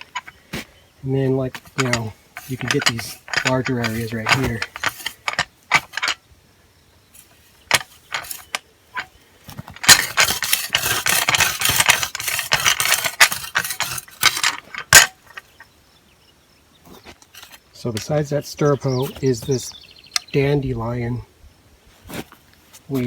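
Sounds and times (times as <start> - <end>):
hand tool scraping soil: 1.3 - 6.2, 7.2 - 15.6, 16.9 - 20.4, 22.0 - 23.0.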